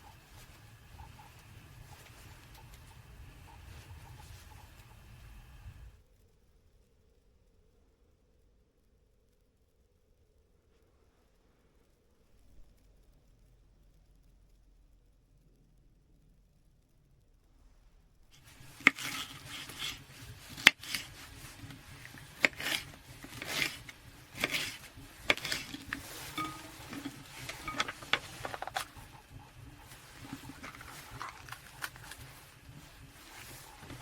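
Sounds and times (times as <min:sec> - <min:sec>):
camping gear clinking and knocking: 0:18.4 - 0:34.0.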